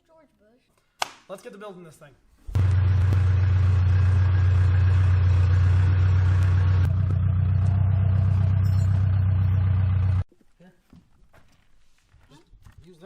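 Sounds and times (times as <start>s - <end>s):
engine running with low hum: 2.6s - 10.2s.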